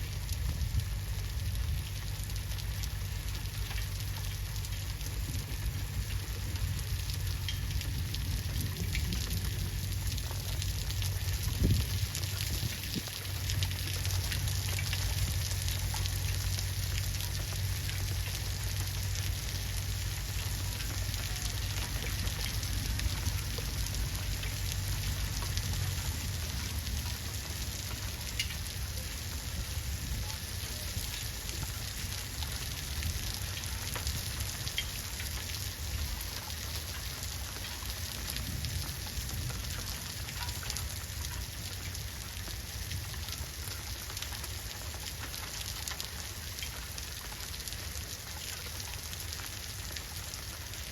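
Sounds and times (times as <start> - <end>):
low steady hum: 0.0 - 37.8
steady rain falling: 0.0 - 50.9.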